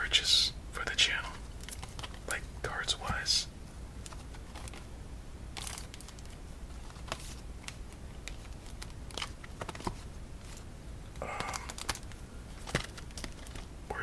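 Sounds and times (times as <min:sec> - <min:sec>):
card boxes tapping and clicking: 0:05.6 - 0:10.6, 0:11.2 - 0:13.7.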